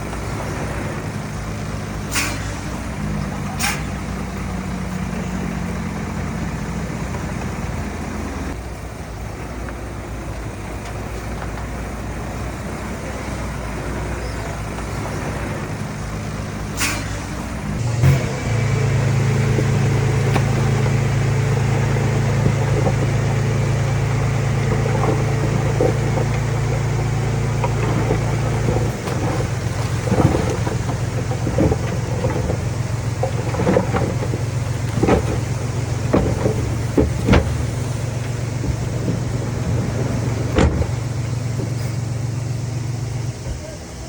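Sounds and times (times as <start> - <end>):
diesel engine running under load: 0.0 - 44.0
metallic clanks and knocks: 19.4 - 42.1.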